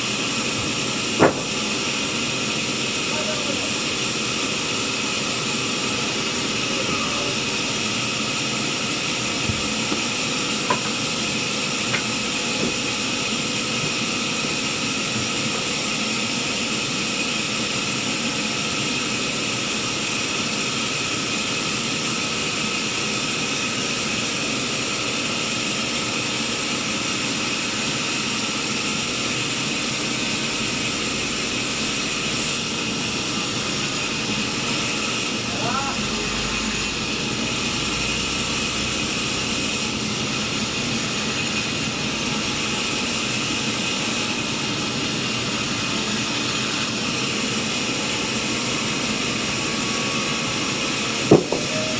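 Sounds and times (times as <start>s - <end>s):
sawmill saw whining: 0.0s - 51.9s
faint knocks: 1.2s - 1.6s, 51.3s - 51.9s.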